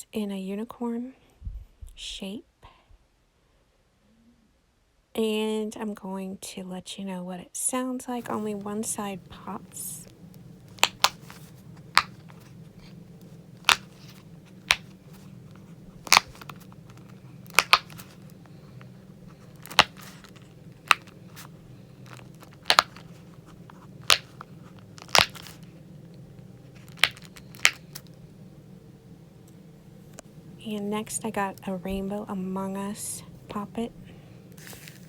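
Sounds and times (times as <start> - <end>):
faint low hum: 0.0 - 35.0
silicone fidget toy popping: 10.7 - 12.9, 16.0 - 18.2, 22.6 - 23.1, 25.0 - 25.6, 26.9 - 28.0.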